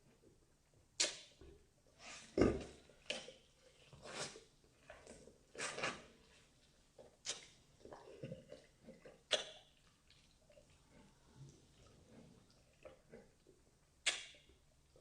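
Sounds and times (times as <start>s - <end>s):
wet chewing sounds: 3.0s - 14.6s.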